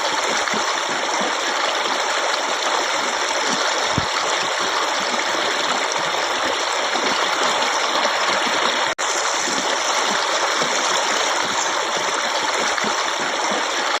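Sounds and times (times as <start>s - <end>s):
stream rushing and splashing: 0.0s - 14.0s.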